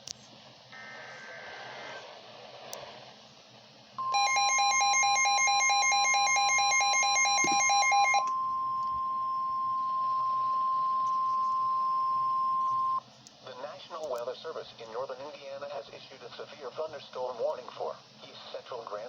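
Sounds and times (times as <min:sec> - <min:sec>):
rapidly pulsing electronic alarm: 0:04.0 - 0:13.0
steady high alarm beep: 0:04.0 - 0:13.0.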